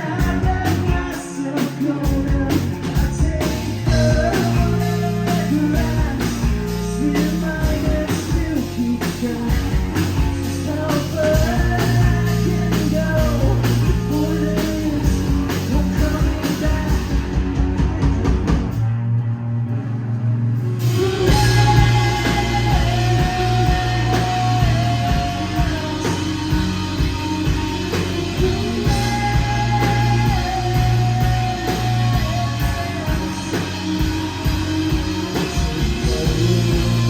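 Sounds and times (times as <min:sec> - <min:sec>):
person singing: 0:00.0 - 0:18.8, 0:20.8 - 0:37.0
fast pounding drum kit: 0:00.0 - 0:18.9, 0:20.7 - 0:37.0
bass guitar: 0:00.0 - 0:37.0
distorted electric guitars: 0:00.0 - 0:37.0.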